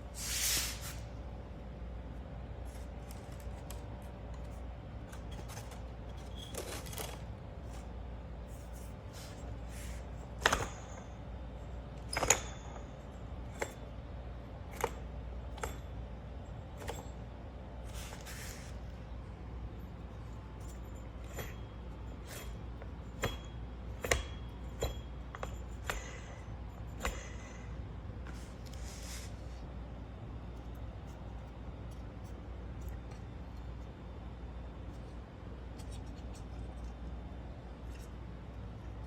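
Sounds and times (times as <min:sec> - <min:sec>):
low steady hum: 0:00.0 - 0:39.0
metal hardware clicks and clinks: 0:10.2 - 0:17.4, 0:19.7 - 0:27.8.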